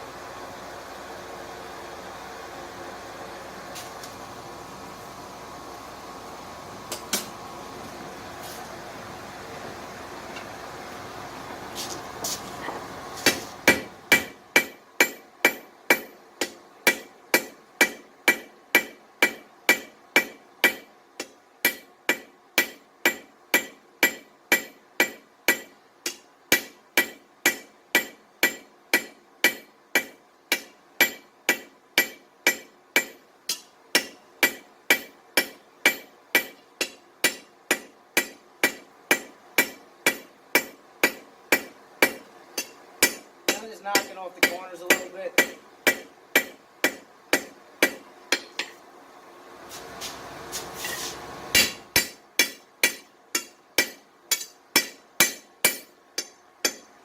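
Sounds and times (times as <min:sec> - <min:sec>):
hammer striking steel on anvil: 0:06.9 - 0:07.3, 0:13.2 - 0:48.8, 0:50.8 - 0:57.0.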